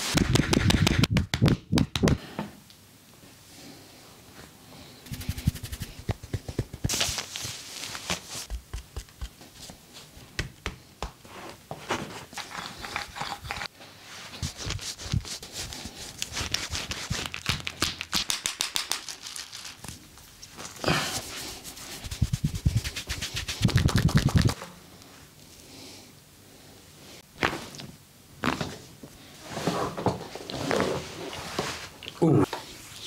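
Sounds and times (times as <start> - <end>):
hands slapping and tapping body: 0.1 - 2.2, 5.2 - 7.1, 8.1 - 11.3, 16.8 - 19.1, 22.0 - 24.6
hands rubbing and brushing: 5.0 - 25.2.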